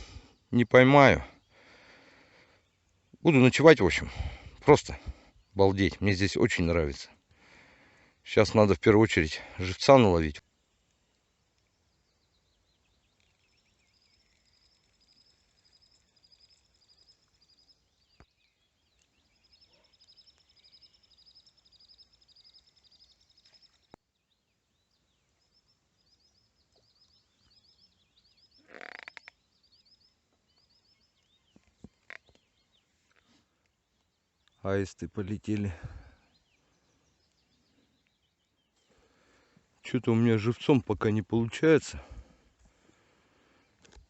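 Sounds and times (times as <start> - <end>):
small bird chirping: 10.5 - 34.7.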